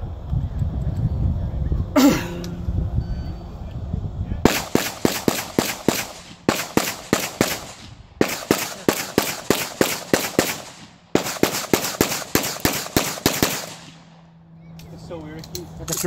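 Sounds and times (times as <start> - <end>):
pistol shots in rapid strings: 4.4 - 14.0.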